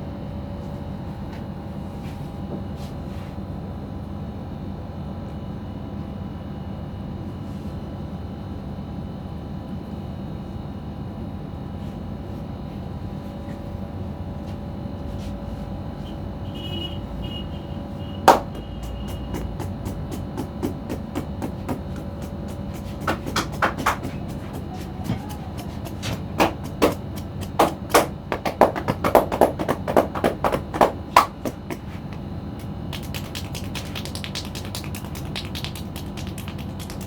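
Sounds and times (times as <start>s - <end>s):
loud sharp snap: 18.3s - 29.2s
faint taps: 18.3s - 32.2s.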